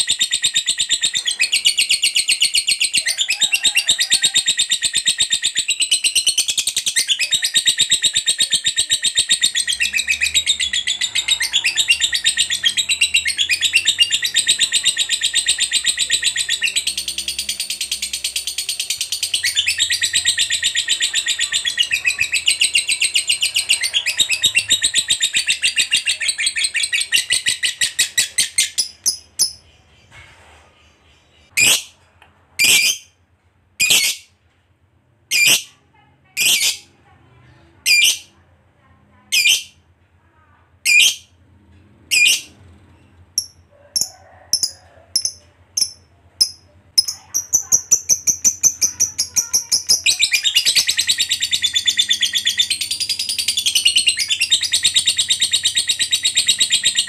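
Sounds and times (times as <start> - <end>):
lovebird chattering trill: 0.0 - 29.7, 35.3 - 35.7, 36.4 - 36.9, 37.8 - 38.3, 39.3 - 39.8, 43.4 - 57.0.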